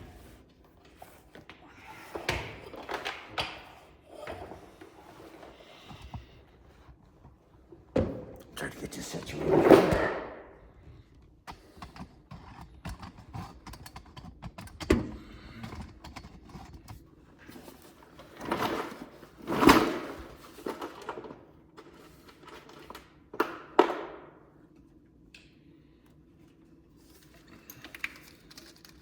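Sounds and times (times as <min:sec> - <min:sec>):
tools and parts clicking and rattling: 0:11.5 - 0:15.0, 0:15.6 - 0:23.9, 0:27.0 - 0:29.0.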